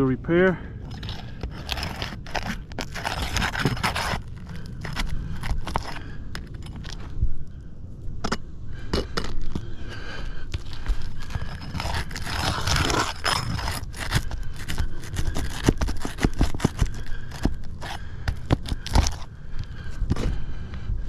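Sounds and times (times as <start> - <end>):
scraping on roof shingles: 1.0 - 6.5, 10.6 - 19.3.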